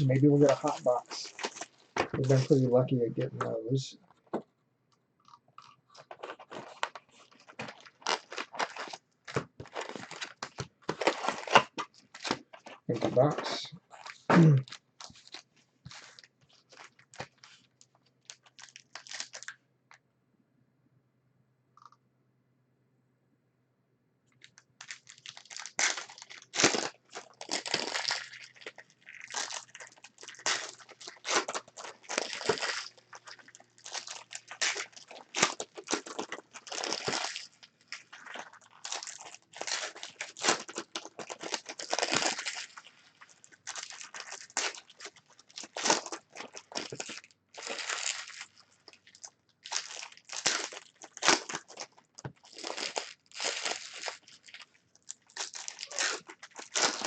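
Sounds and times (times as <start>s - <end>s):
foil wrappers crinkling and tearing: 0.0s - 3.6s, 5.6s - 19.6s, 24.5s - 57.0s.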